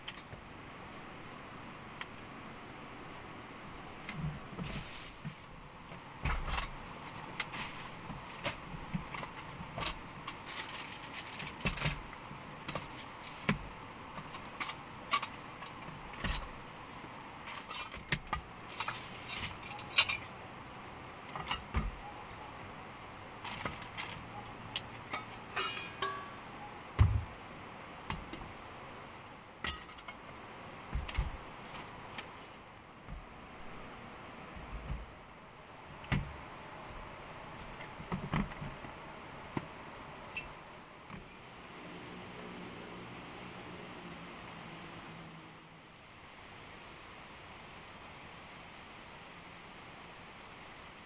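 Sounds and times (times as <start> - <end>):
steady low hiss: 0.0 - 51.0
clicks and knocks of objects handled: 3.8 - 16.6, 17.4 - 20.4, 23.4 - 26.4.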